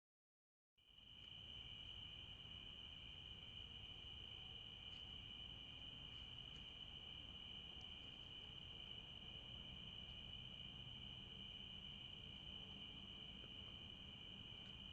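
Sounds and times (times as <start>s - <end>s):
crickets chirping: 0.8s - 14.9s
faint ticks: 4.3s - 8.6s, 9.2s - 10.8s, 13.2s - 14.9s.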